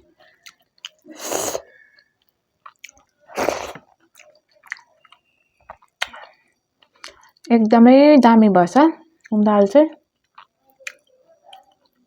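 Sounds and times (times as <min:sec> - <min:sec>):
wet chewing and lip smacks: 0:01.9 - 0:03.1.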